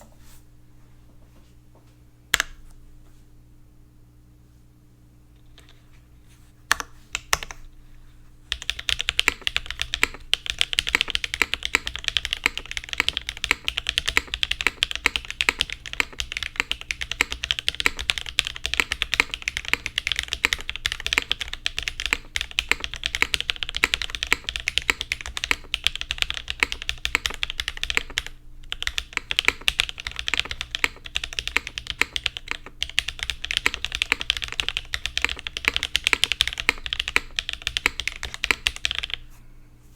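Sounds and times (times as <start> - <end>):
mechanical keyboard typing: 8.5 - 39.2.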